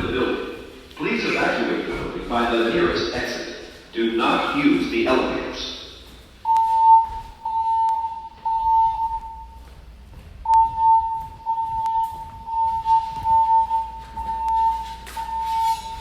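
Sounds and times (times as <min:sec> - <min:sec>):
voice evacuation announcements: 0:00.0 - 0:09.8, 0:10.4 - 0:16.0
fire alarm tone: 0:06.4 - 0:09.8, 0:10.4 - 0:16.0.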